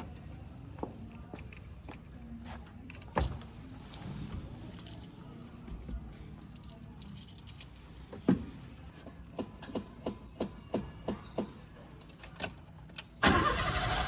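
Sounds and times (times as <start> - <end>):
car keys jangling: 6.4 - 8.2.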